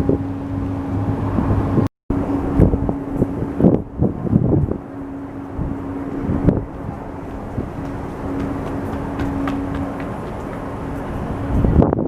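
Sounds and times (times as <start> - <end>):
steady low hum: 0.0 - 12.0
wind buffeting microphone: 0.0 - 12.0.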